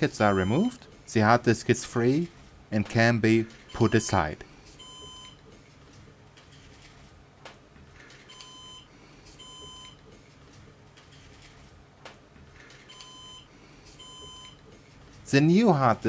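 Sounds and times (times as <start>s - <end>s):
short high alarm beeps: 4.8s - 5.4s, 8.3s - 10.0s, 12.9s - 14.6s.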